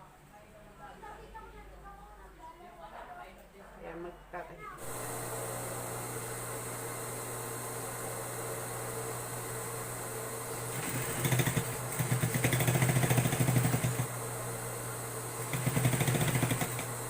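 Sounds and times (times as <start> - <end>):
sewing machine hum: 4.8 - 17.0
sewing machine needle stitching: 10.7 - 14.1, 15.4 - 17.0.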